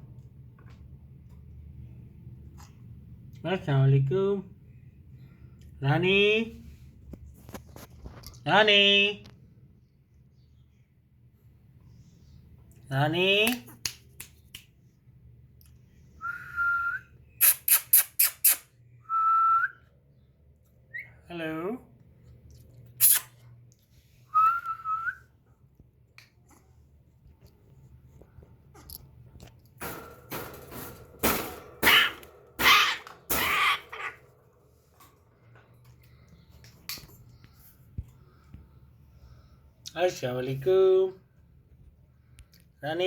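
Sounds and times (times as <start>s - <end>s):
parrot screeching: 31.8s - 34.3s.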